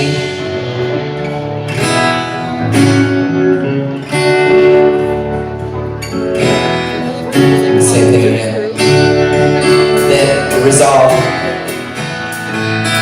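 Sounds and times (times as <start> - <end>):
acoustic guitar strumming chords: 0.0 - 13.0.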